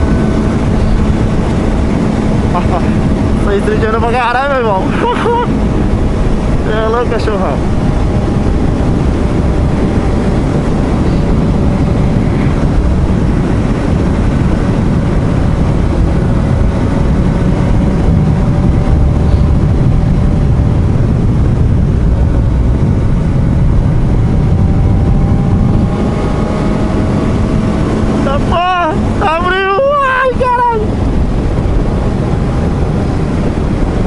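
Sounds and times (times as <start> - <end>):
motorcycle engine cruising: 0.0 - 34.0
wind noise on microphone: 0.0 - 34.0.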